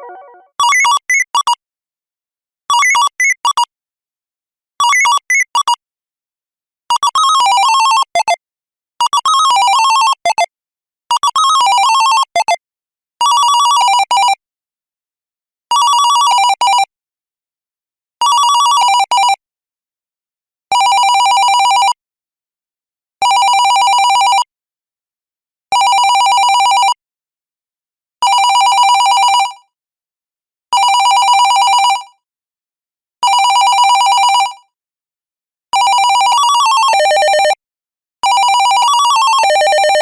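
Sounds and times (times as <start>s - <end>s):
two-tone phone ringtone trill: 0.0s - 0.5s, 33.3s - 34.6s, 35.8s - 37.6s, 38.2s - 40.0s.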